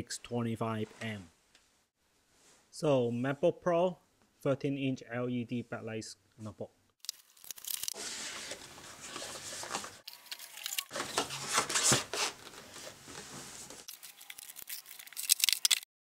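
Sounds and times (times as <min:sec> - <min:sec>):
packaging crinkling and rustling: 0:13.7 - 0:15.9.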